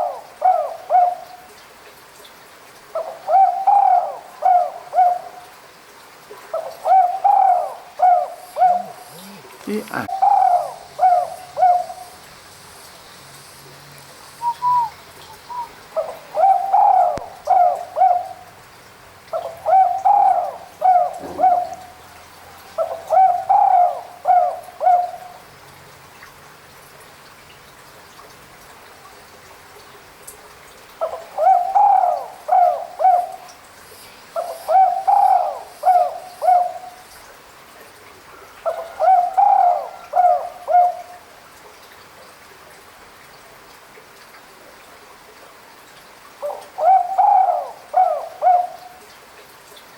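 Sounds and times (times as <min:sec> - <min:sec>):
dove cooing: 0:00.0 - 0:01.3, 0:03.0 - 0:05.4, 0:06.5 - 0:12.2, 0:14.4 - 0:18.4, 0:19.3 - 0:25.4, 0:31.0 - 0:33.5, 0:34.3 - 0:37.0, 0:38.6 - 0:41.1, 0:46.4 - 0:49.0.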